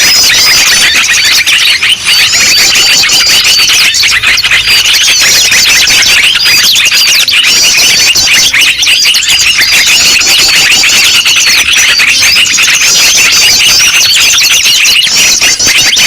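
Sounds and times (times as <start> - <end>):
many small birds chirping: 0.0 - 16.0.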